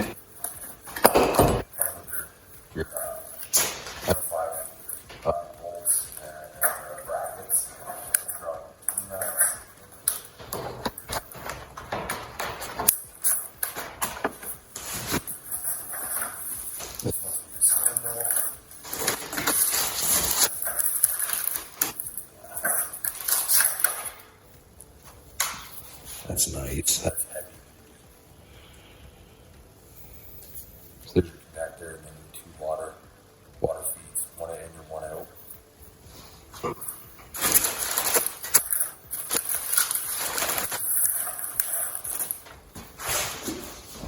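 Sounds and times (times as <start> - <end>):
packaging rustling and crinkling: 10.0 - 24.1, 37.3 - 44.0.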